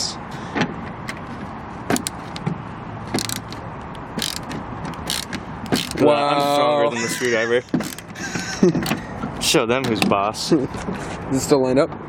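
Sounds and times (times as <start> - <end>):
screwdriver clicking and creaking: 1.9 - 9.2.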